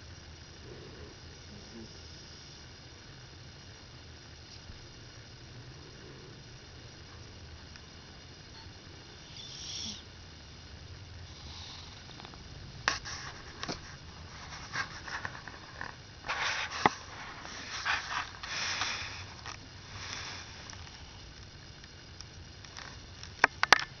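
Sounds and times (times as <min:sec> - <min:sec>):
cat snoring: 0:00.6 - 0:02.6, 0:05.6 - 0:07.2, 0:08.6 - 0:10.1, 0:11.2 - 0:12.4.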